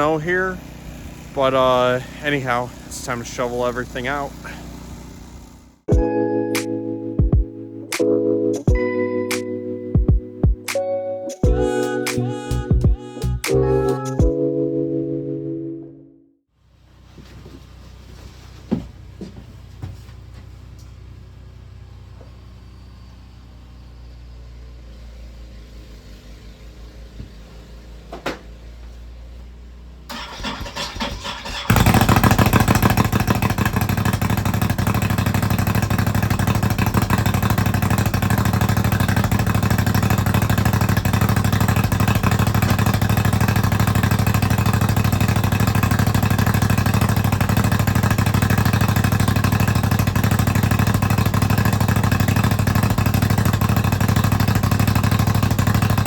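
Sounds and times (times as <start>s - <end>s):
engine cranking and running: 0.0s - 6.0s, 30.1s - 56.0s.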